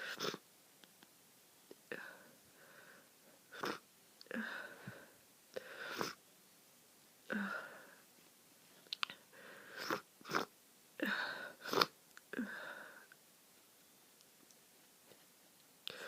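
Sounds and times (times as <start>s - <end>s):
congested nose sniffing: 0.0s - 0.4s, 5.8s - 6.2s, 9.6s - 10.5s, 11.6s - 12.0s.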